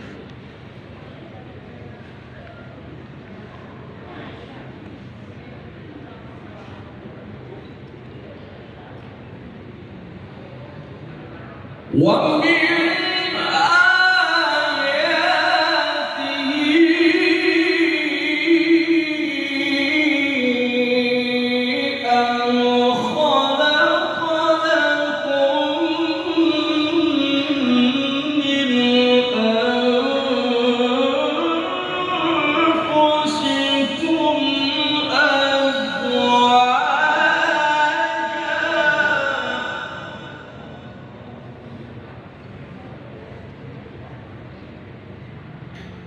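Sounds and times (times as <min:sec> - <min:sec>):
man reciting melodically: 0:11.9 - 0:41.1.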